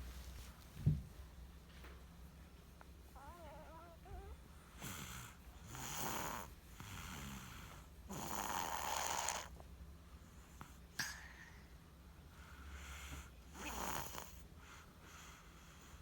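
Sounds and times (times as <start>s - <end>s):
baby snoring: 3.2s - 9.5s, 13.0s - 14.4s.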